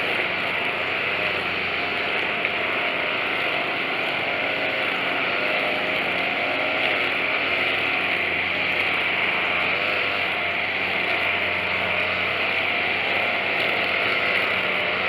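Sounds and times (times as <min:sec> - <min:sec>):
string trimmer engine running: 0:00.0 - 0:15.0.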